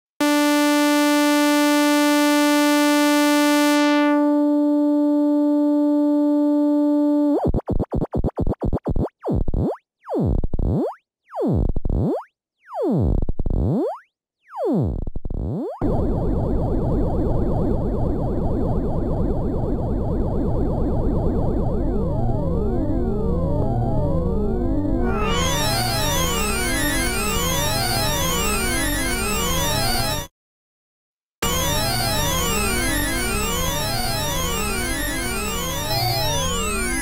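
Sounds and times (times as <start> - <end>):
dense synthesizer buzzing: 0.2 - 7.4
synthesizer held tone: 0.2 - 7.5, 15.8 - 30.3, 31.4 - 37.0
synthesizer swooping pitch sweeps: 24.9 - 28.7.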